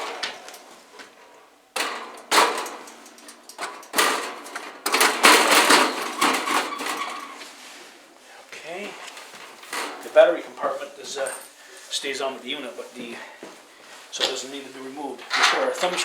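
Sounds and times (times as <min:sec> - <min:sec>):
metal parts clattering and scraping: 0:00.0 - 0:07.8, 0:08.8 - 0:11.6, 0:15.2 - 0:16.0.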